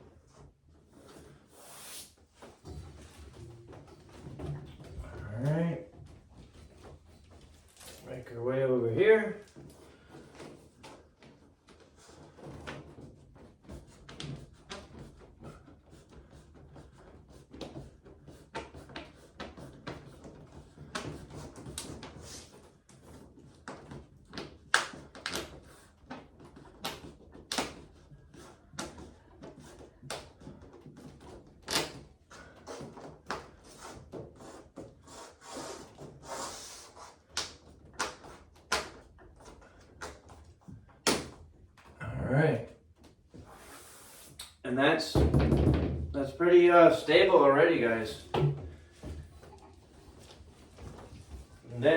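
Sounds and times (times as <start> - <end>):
cabinet panels knocking and clicking: 45.1 - 46.2, 48.2 - 49.2.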